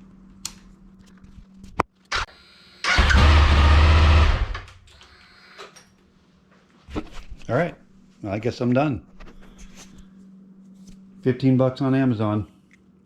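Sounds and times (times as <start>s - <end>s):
motorcycle engine starting: 2.1s - 4.8s.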